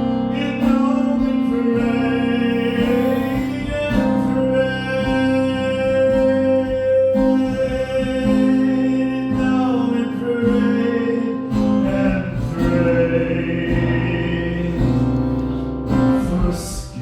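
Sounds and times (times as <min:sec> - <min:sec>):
guitar chords: 0:00.0 - 0:17.0
man singing: 0:00.0 - 0:17.0.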